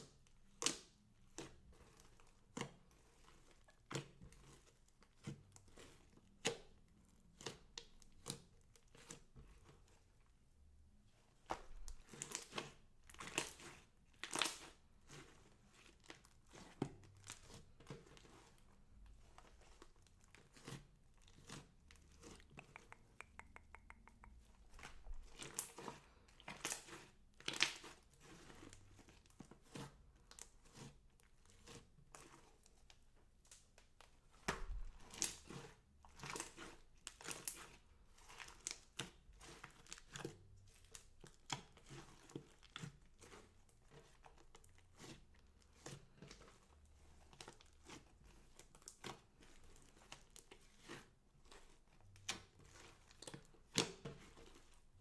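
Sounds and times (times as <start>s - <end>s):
crinkling and crackling: 11.0s - 55.0s
sharp clicks: 22.6s - 24.4s.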